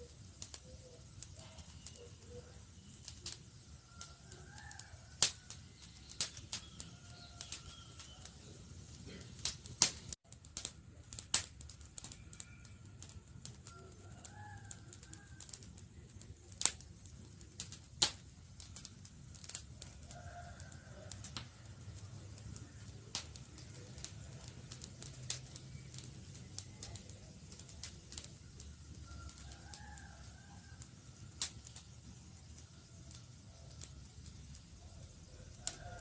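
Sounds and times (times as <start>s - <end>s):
campfire crackling and popping: 0.0s - 36.0s
birds calling faintly: 0.1s - 10.1s.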